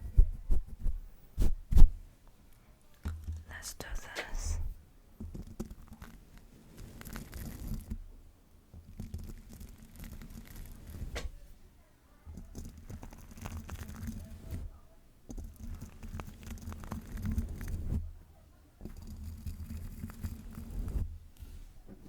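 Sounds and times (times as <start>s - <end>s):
scratchy rubbing on microphone: 0.0s - 2.0s, 5.3s - 8.0s, 9.0s - 11.3s, 12.4s - 18.2s, 18.8s - 21.8s.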